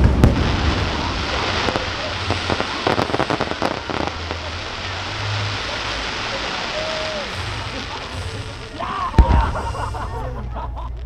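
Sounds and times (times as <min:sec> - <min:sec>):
sharp firework pops: 0:00.0 - 0:05.5, 0:09.2 - 0:09.6
fireworks crackling: 0:00.0 - 0:11.0.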